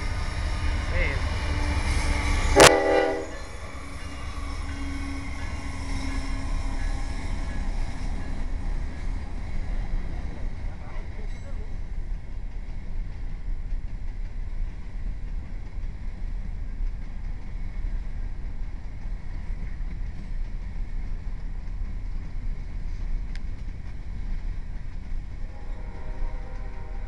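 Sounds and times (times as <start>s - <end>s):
multi-tone vehicle horn: 2.6s - 3.4s, 25.5s - 27.0s.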